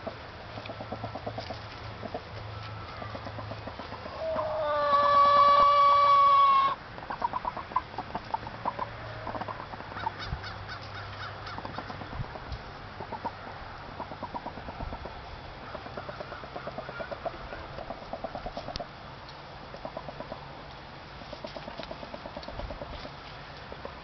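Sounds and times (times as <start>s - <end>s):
rooster long call: 4.2s - 6.8s.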